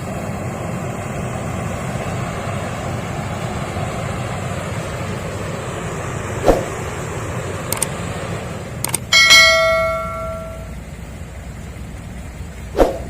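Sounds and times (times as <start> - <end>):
diesel machinery running: 0.0 - 13.0
metallic clang: 9.1 - 10.8.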